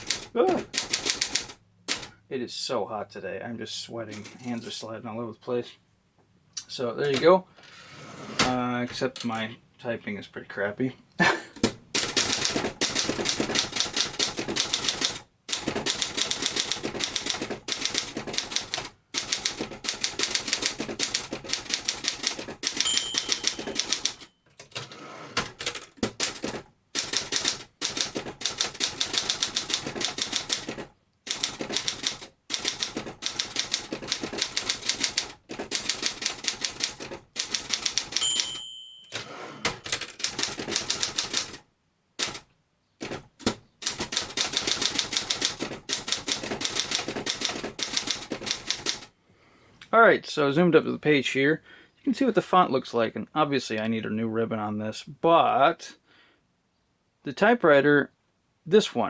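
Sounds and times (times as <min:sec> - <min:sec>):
manual typewriter typing: 0:00.0 - 0:02.2, 0:04.1 - 0:04.8, 0:11.6 - 0:41.6, 0:42.2 - 0:49.1
typewriter margin bell ringing: 0:21.1 - 0:24.9, 0:37.4 - 0:41.5.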